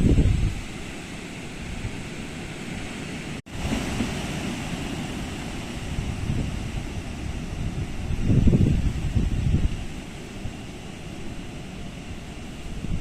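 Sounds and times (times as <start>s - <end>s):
strong wind rushing: 0.0s - 0.8s, 3.5s - 10.6s, 12.0s - 13.0s
wind buffeting microphone: 0.0s - 0.8s, 3.5s - 13.0s.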